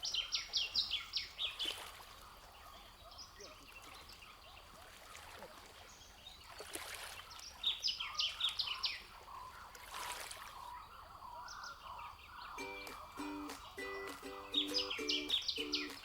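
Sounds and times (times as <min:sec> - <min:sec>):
outdoor background hiss: 0:11.7 - 0:16.0
songbird singing high notes: 0:12.6 - 0:16.0.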